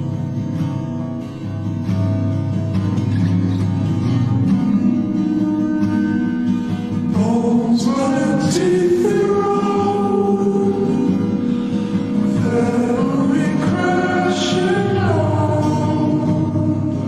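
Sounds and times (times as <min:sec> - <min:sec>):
guitar: 0:00.0 - 0:17.0
voices singing: 0:04.8 - 0:17.0.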